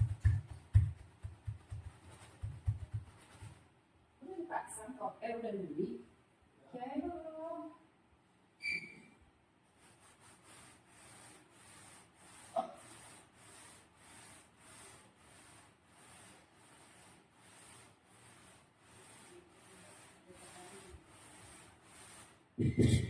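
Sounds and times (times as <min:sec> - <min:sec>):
slime rubbing strokes: 0:00.0 - 0:03.7, 0:09.6 - 0:22.6.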